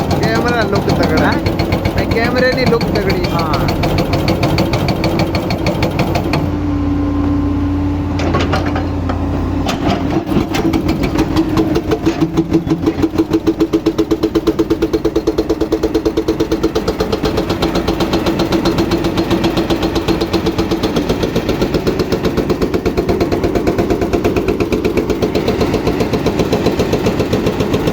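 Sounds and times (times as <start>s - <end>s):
hydraulic breaker hammering: 0.0s - 6.5s
excavator diesel engine running: 0.0s - 27.9s.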